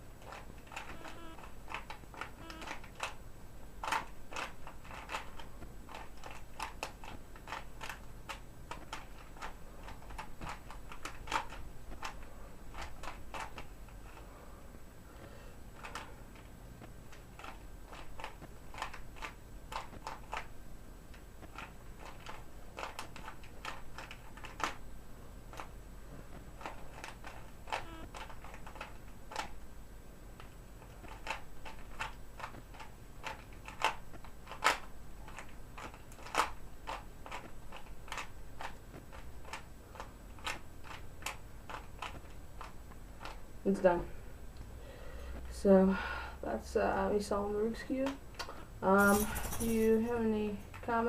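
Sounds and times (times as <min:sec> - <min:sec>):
puzzle cube clicking as turned: 0:00.2 - 0:03.2, 0:03.8 - 0:13.7, 0:17.1 - 0:20.5, 0:21.1 - 0:24.8, 0:26.6 - 0:29.6, 0:30.8 - 0:43.4.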